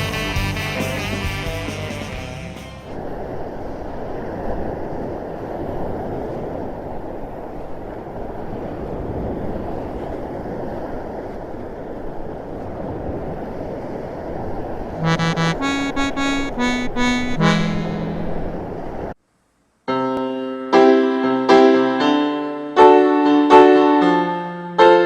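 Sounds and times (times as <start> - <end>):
music: 0.0 - 3.0, 15.0 - 18.6, 19.9 - 25.0
steady low rushing noise: 15.0 - 19.2.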